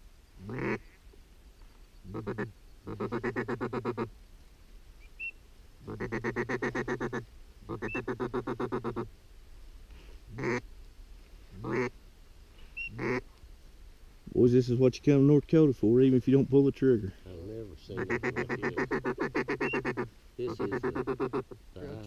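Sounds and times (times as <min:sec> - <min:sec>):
ducks quacking: 0:00.4 - 0:01.0, 0:02.0 - 0:04.1, 0:05.2 - 0:09.1, 0:10.3 - 0:10.6, 0:11.5 - 0:11.9, 0:12.8 - 0:13.2, 0:17.8 - 0:21.9.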